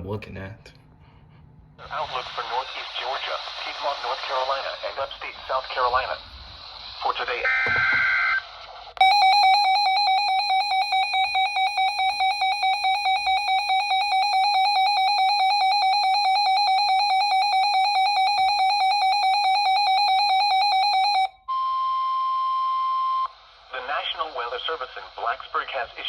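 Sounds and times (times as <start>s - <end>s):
steady broadcast alert tone: 1.8s - 26.0s
shrill electronic alarm beeping: 9.0s - 23.4s.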